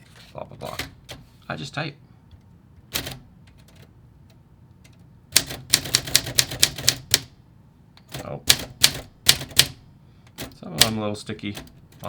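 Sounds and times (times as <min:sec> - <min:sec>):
typewriter key strikes: 0:05.4 - 0:07.3, 0:08.1 - 0:09.8, 0:10.4 - 0:12.0.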